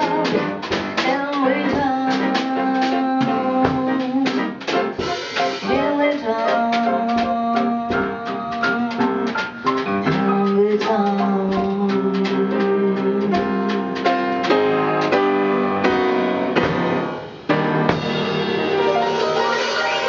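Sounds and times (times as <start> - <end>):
jazz piano playing chords: 0.0 - 20.0.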